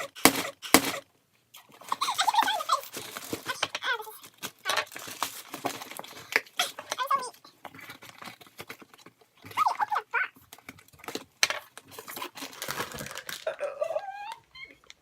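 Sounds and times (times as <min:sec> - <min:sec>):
packaging crinkling and tearing: 0:01.9 - 0:09.2, 0:10.4 - 0:15.0.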